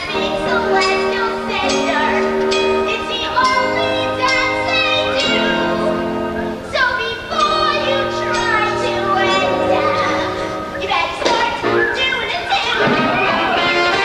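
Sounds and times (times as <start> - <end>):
instrumental accompaniment: 0.0 - 14.0
singing voices: 0.0 - 14.0.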